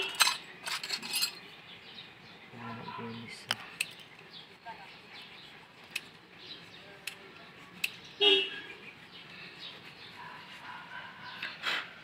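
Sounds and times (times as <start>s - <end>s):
car horn toot: 8.2s - 8.7s.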